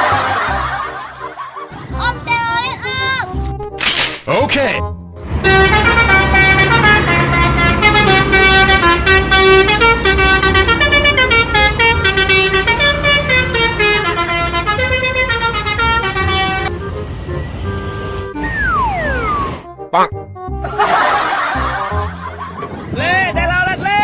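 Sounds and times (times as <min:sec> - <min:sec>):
multi-tone bus horn tune: 0:05.2 - 0:19.6.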